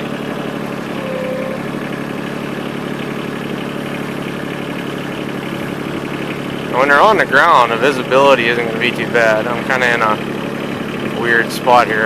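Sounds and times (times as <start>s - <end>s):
tractor diesel engine idling: 0.0s - 12.0s
faint whine: 0.8s - 1.9s.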